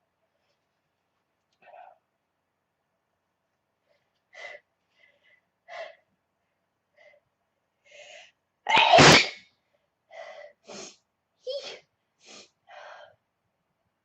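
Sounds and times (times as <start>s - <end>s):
woman sneezing: 8.7s - 9.4s.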